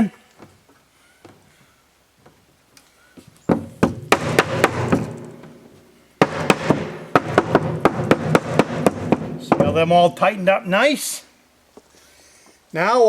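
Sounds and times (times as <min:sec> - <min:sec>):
knocks on wooden boards: 0:03.5 - 0:05.6, 0:06.2 - 0:09.9.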